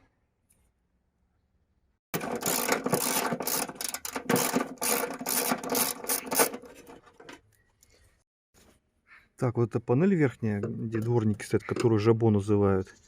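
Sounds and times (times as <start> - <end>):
ratchet wrench clicking: 2.2 - 6.6.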